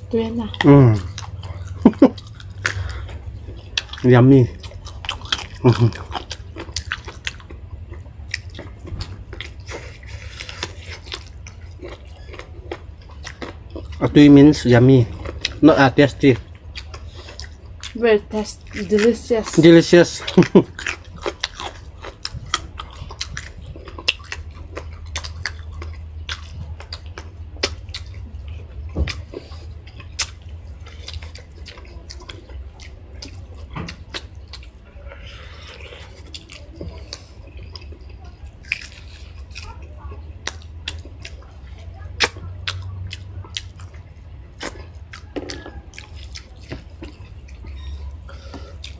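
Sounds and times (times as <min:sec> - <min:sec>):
low steady hum: 0:00.0 - 0:48.9
mouth chewing food: 0:00.0 - 0:48.9
mouth clicks and smacks: 0:29.1 - 0:30.4, 0:42.2 - 0:44.0, 0:44.6 - 0:47.9.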